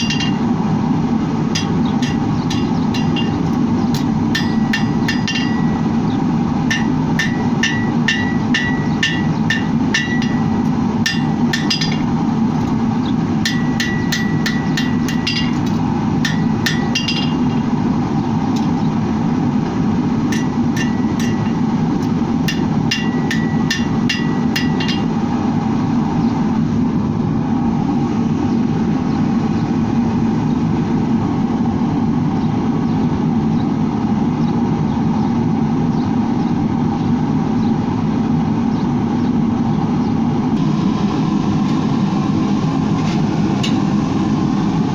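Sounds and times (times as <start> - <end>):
hammer striking hot steel on anvil: 0.0 - 0.6, 1.5 - 6.0, 6.7 - 12.7, 13.4 - 17.8, 20.3 - 25.2
steady low drone: 0.0 - 44.9.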